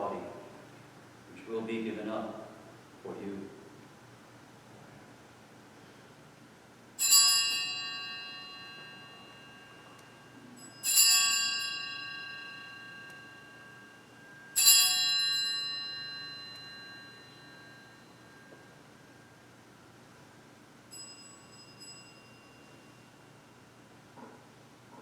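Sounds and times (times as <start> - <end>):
altar bells ringing: 7.0 - 19.5, 20.9 - 23.7.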